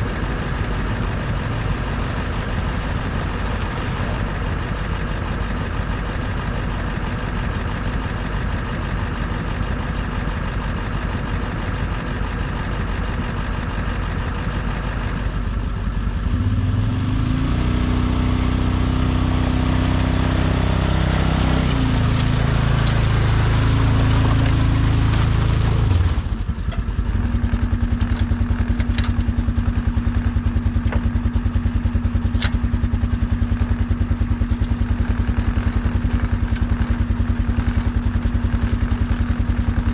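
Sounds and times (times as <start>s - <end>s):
machine engine running: 14.6s - 39.9s.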